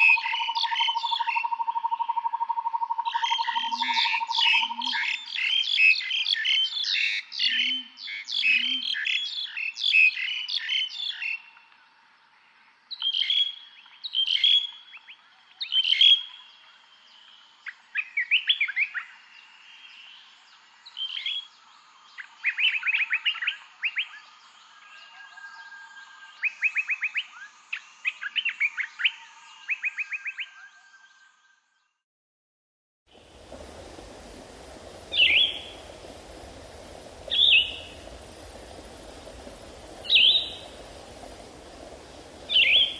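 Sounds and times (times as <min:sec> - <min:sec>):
birds chirping: 0:33.2 - 0:42.9
trilled bird calls: 0:33.2 - 0:42.9.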